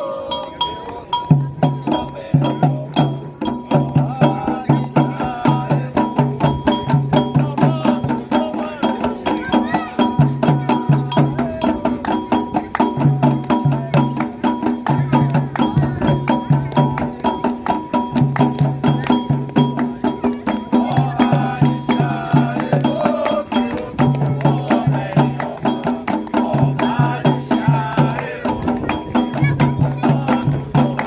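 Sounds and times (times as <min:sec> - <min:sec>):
voices singing: 0:00.0 - 0:18.0, 0:18.6 - 0:31.0
hand drums playing: 0:00.0 - 0:31.0
metal bell keeping time: 0:00.1 - 0:05.0, 0:09.2 - 0:13.1.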